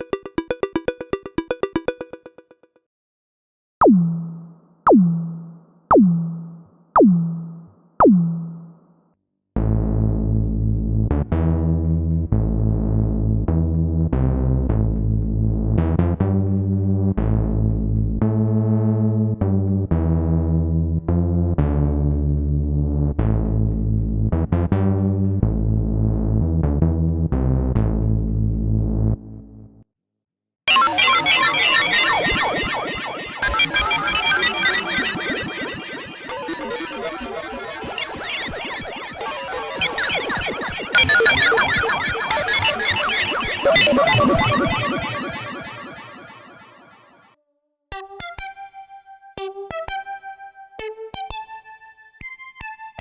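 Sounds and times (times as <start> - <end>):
synthesizer chord progression: 0.0 - 2.7, 30.7 - 47.0
synthesizer percussive falling notes: 0.0 - 2.7, 3.8 - 8.8, 30.7 - 47.1.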